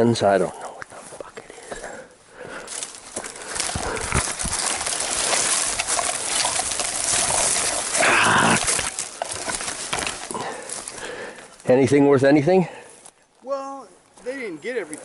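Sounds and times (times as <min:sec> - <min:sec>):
footsteps crunching dry leaves: 0:02.2 - 0:11.7
scraping rustle: 0:02.6 - 0:11.0.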